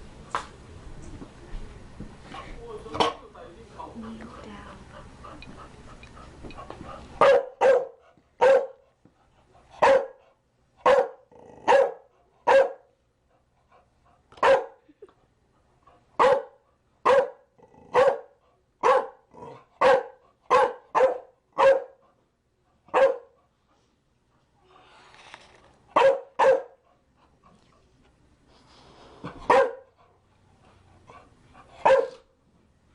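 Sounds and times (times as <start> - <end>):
dog barking: 7.2 - 8.8, 9.8 - 10.2, 10.8 - 12.9, 14.4 - 14.8, 16.2 - 19.2, 19.8 - 22.0, 22.9 - 23.4, 26.0 - 26.8, 29.5 - 29.9, 31.8 - 32.2.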